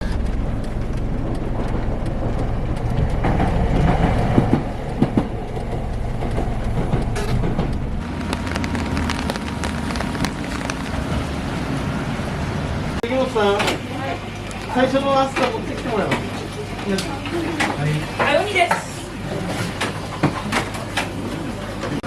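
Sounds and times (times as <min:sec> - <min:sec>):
wheels clattering: 0:00.0 - 0:13.8
train rumbling on rails: 0:00.0 - 0:14.4.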